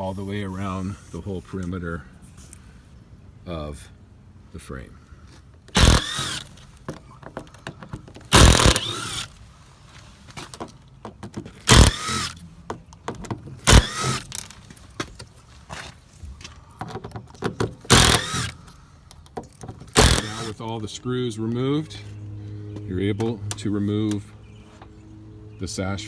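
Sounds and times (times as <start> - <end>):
cordless drill backing out screws: 5.7 - 9.4, 11.6 - 12.4, 13.6 - 14.6, 16.8 - 20.7.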